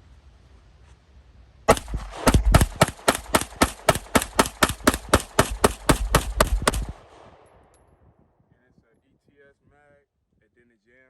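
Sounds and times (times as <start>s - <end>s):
rapid pistol shots: 1.7s - 7.6s.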